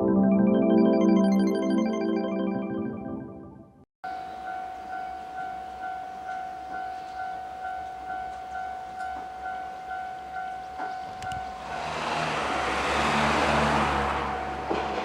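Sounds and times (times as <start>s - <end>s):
level crossing warning bell: 4.1s - 14.8s.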